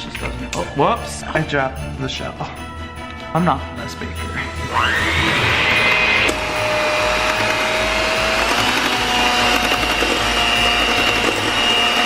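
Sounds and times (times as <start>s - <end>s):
electric hand mixer whine: 4.5s - 12.0s.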